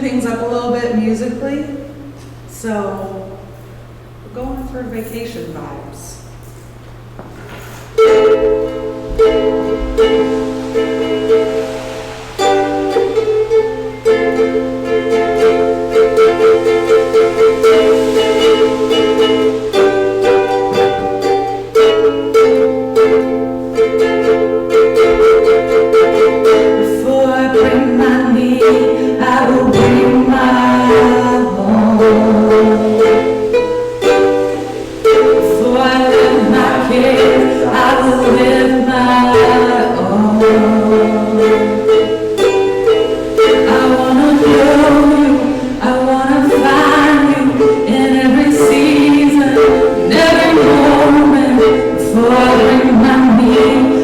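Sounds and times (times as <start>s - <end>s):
strummed string instrument: 6.4s - 54.0s
voices singing: 26.5s - 54.0s.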